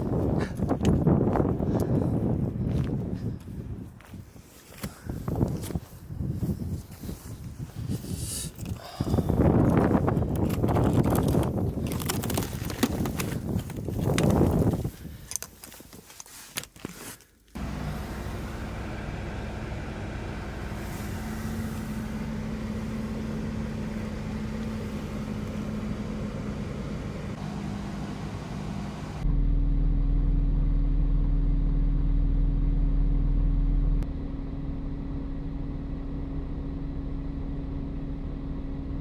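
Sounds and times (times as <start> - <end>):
car engine humming: 17.5 - 39.0.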